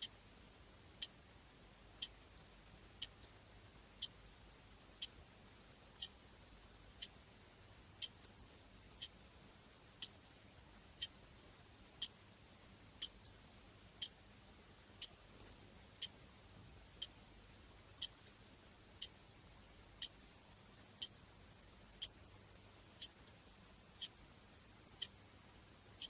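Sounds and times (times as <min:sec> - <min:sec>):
clock ticking: 0:02.0 - 0:02.2, 0:03.0 - 0:03.3, 0:04.0 - 0:04.2, 0:05.0 - 0:05.2, 0:06.0 - 0:06.2, 0:07.0 - 0:07.2, 0:08.0 - 0:08.3, 0:08.9 - 0:09.2, 0:11.0 - 0:11.2, 0:13.0 - 0:13.4, 0:15.0 - 0:15.2, 0:17.0 - 0:17.2, 0:18.0 - 0:18.2, 0:19.0 - 0:19.2, 0:20.0 - 0:20.2, 0:22.0 - 0:22.2, 0:23.0 - 0:23.2, 0:24.0 - 0:24.2, 0:25.0 - 0:25.2.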